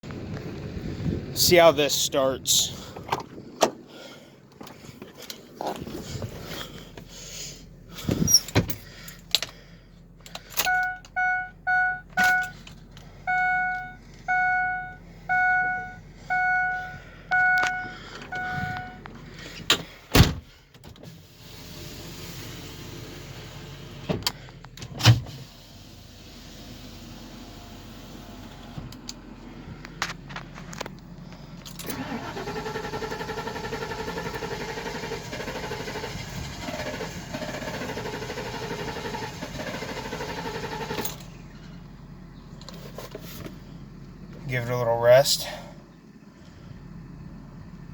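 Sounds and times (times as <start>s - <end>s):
dashboard warning chime beeping: 10.6s - 12.6s, 13.2s - 19.1s.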